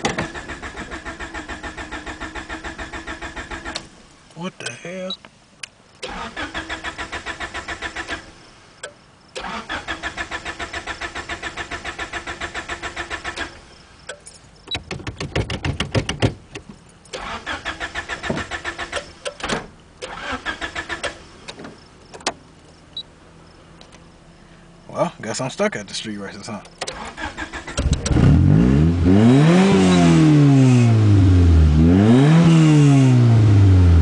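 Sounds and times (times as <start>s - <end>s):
starter cranking engine: 0.1s - 3.8s, 20.0s - 21.2s.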